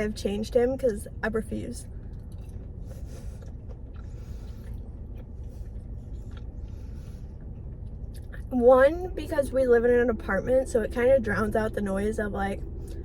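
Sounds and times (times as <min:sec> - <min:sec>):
steady low hum: 0:00.0 - 0:13.0
person chewing food: 0:02.0 - 0:08.5.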